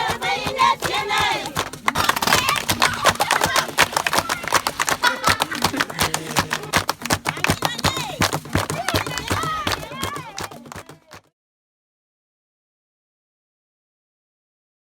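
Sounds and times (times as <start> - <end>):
crowd calling out: 0.0 - 10.7
sharp percussive beats: 0.0 - 11.3.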